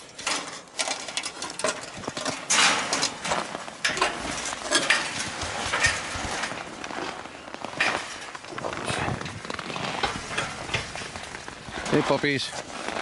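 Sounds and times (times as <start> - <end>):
footsteps crunching on frozen snow: 3.1 - 13.0.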